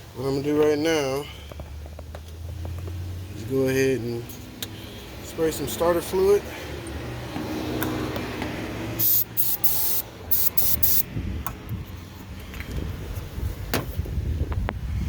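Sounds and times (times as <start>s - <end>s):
aerosol can spraying: 9.0s - 11.0s.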